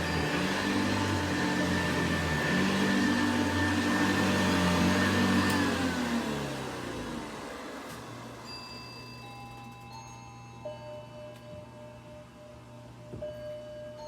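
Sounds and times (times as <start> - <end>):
vacuum motor winding down: 0.0 - 8.4
upright vacuum cleaner running: 0.0 - 8.5.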